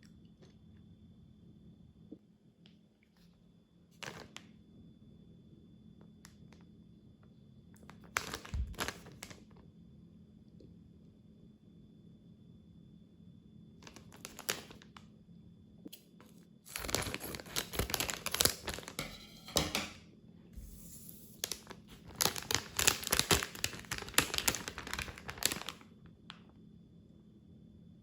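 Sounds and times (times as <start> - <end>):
snack packet crinkling: 4.0 - 4.4, 7.9 - 9.4, 13.8 - 15.0, 16.7 - 19.0, 20.8 - 25.8.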